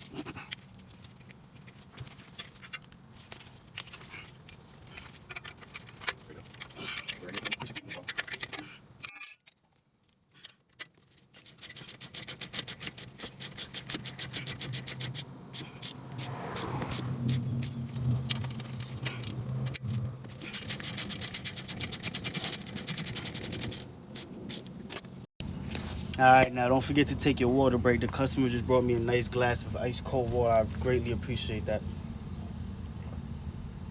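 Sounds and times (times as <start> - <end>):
hand ratchet clicking: 10.5 - 16.0.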